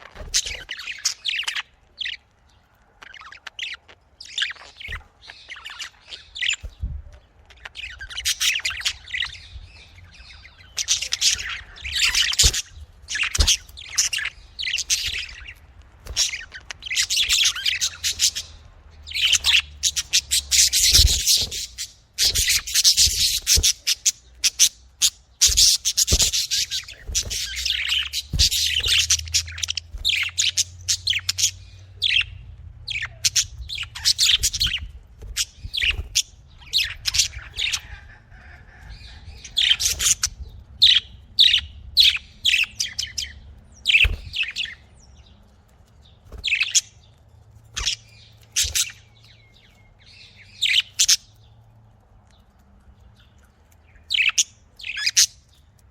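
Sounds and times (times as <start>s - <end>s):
budgerigars chirping: 0.0s - 45.4s, 46.0s - 51.6s, 52.9s - 55.8s.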